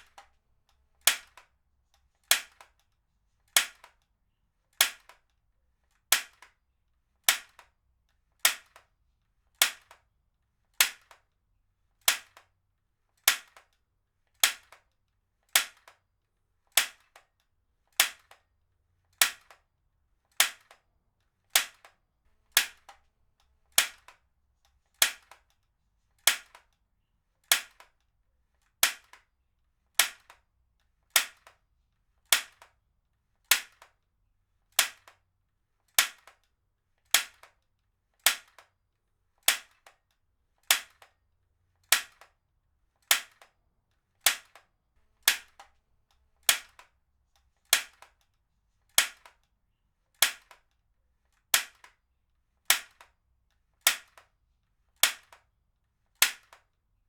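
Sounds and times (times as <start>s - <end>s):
heavy-duty stapler snapping: 46.4s - 46.9s, 49.0s - 49.4s.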